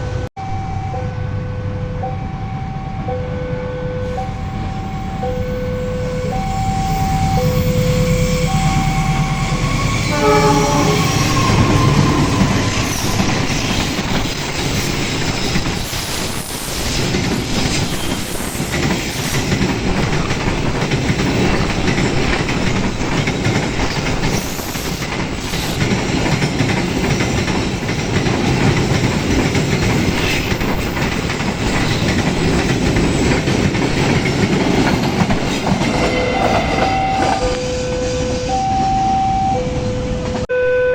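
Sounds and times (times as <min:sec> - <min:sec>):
two-tone crossing alarm: 0:00.4 - 0:14.9, 0:35.8 - 0:40.9
train wheels clattering: 0:07.4 - 0:38.6
train horn blast: 0:09.8 - 0:13.3.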